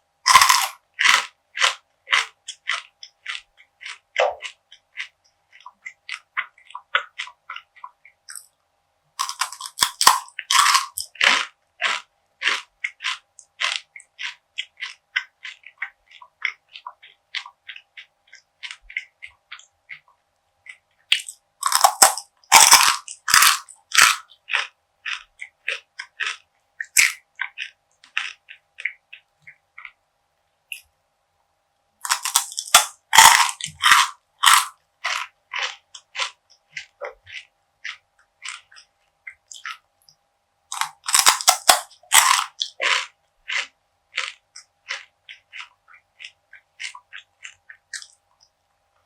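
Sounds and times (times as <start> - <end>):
loud crunching bites: 0.3 - 5.1, 9.2 - 15.6, 21.1 - 29.0, 32.0 - 38.8, 40.7 - 48.1
crisp chewing crackles: 0.3 - 8.5, 9.2 - 30.0, 32.0 - 48.6.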